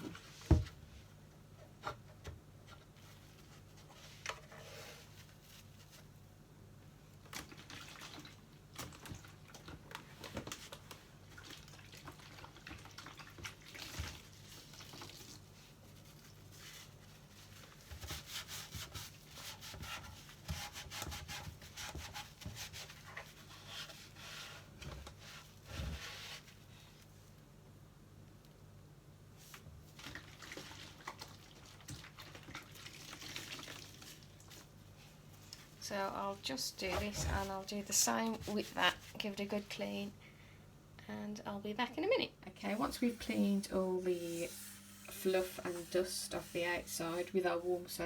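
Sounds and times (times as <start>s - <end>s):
cloth rubbing plastic: 42.6s - 48.0s.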